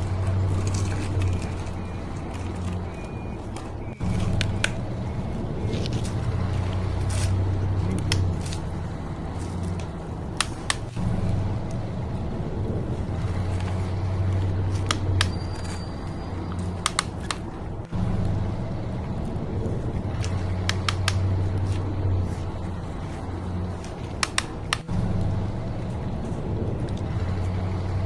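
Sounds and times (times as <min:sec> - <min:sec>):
sharp clicks: 0:16.5 - 0:17.5, 0:24.2 - 0:24.9.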